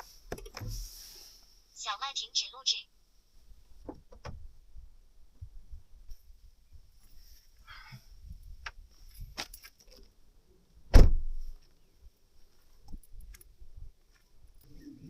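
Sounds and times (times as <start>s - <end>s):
loud heavy thump: 10.9s - 11.4s.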